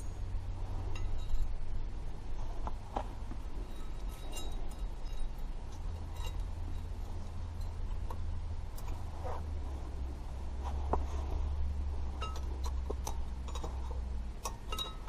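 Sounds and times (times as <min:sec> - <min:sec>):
light metal clinks and taps: 0:00.0 - 0:01.7, 0:02.6 - 0:08.2, 0:12.1 - 0:15.0
steady low rumble: 0:00.0 - 0:15.0.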